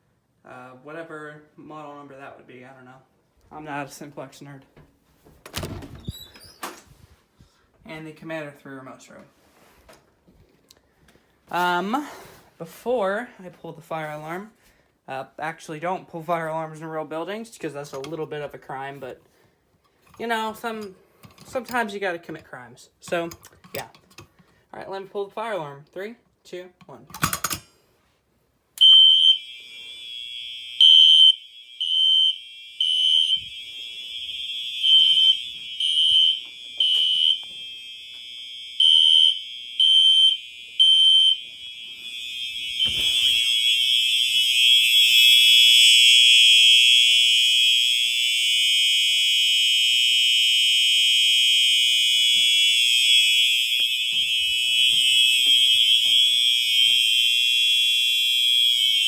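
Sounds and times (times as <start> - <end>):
fire alarm horn blasts: 28.8 - 59.0
quiet steady alarm tone: 28.8 - 59.0.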